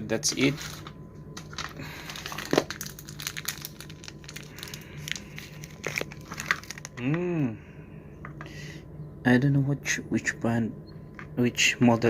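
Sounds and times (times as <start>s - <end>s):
plastic packaging crinkling: 0.3s - 7.2s.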